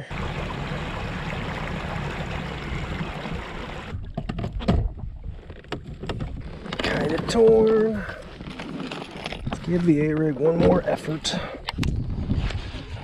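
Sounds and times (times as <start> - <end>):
water rushing around kayak: 0.0 - 9.4.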